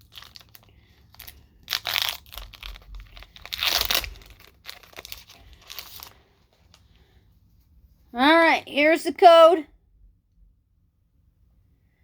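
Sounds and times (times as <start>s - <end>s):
foil wrapper crinkling and tearing: 0.0s - 6.8s.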